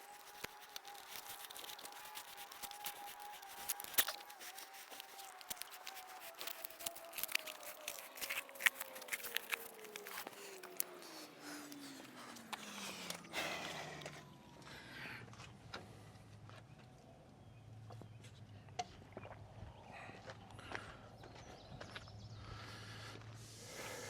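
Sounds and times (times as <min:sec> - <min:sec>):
scissors snipping rubber mat: 0:00.0 - 0:13.2.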